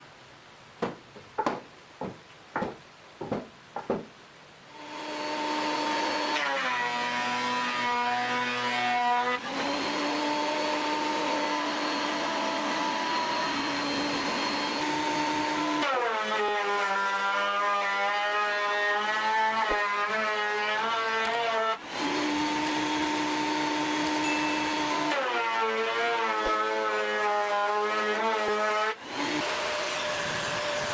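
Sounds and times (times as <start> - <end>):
sharp knocks: 0.8 - 4.2
power tool motor whining: 4.8 - 30.9.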